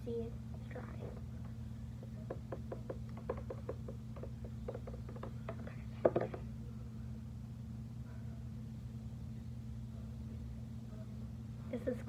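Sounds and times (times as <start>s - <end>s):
low electrical hum: 0.0s - 12.0s
fingers clicking and tapping: 2.0s - 6.4s
louder knock: 2.3s - 5.4s.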